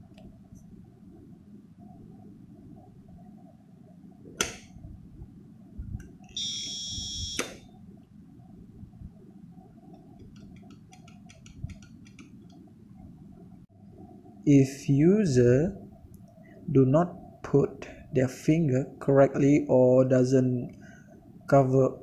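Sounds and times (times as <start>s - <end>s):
high buzzer beep: 6.4s - 7.5s.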